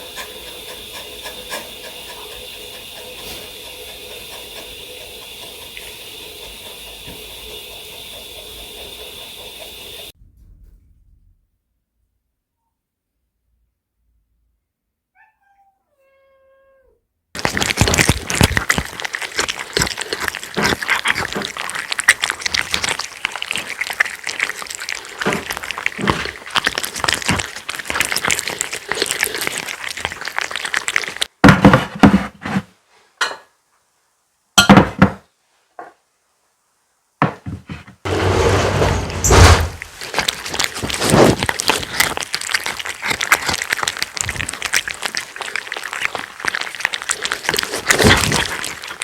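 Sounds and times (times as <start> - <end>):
cat panting rapidly: 0.0 - 10.1
cat meowing faintly: 15.1 - 17.0.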